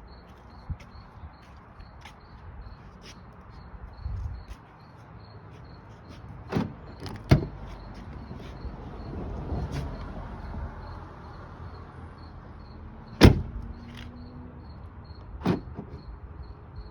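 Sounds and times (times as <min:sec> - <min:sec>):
crickets chirping: 0:00.0 - 0:16.9
car door unlocking clunk: 0:06.5 - 0:07.6, 0:13.2 - 0:14.1, 0:15.4 - 0:16.0.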